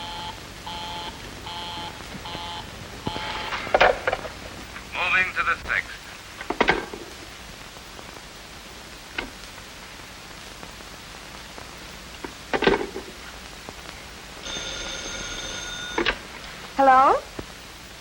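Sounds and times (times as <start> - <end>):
telephone bell ringing: 0.0 - 3.6, 14.4 - 16.2
television soundtrack hiss: 0.0 - 18.0.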